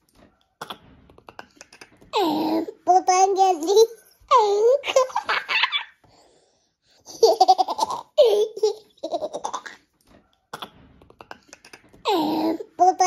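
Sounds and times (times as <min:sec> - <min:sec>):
child giggling: 0:04.5 - 0:06.0.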